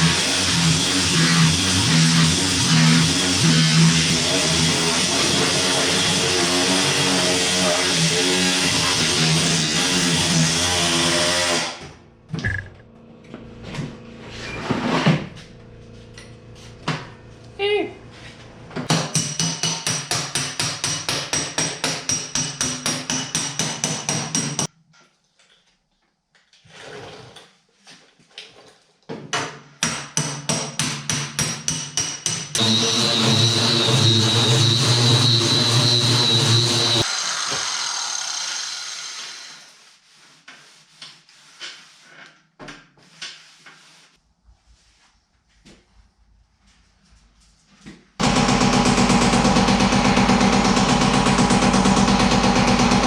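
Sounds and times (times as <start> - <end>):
power tool winding down: 32.6 - 39.7, 48.2 - 53.0.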